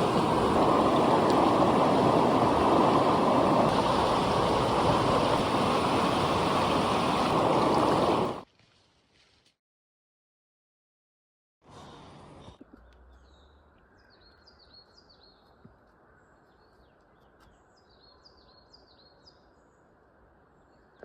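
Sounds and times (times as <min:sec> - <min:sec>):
flowing water rushing: 0:00.0 - 0:08.4.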